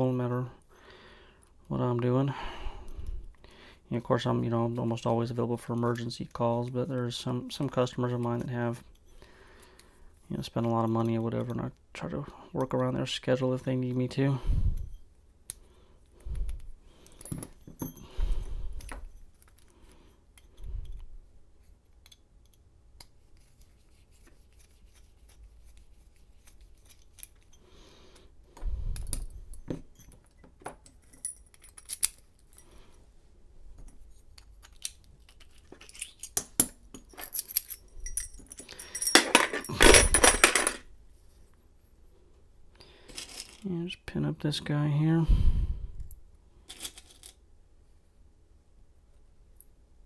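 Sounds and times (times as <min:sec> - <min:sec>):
metal lock parts clicking: 0:29.0 - 0:32.6, 0:34.4 - 0:40.8
metallic jangling: 0:29.0 - 0:32.7, 0:35.8 - 0:40.8.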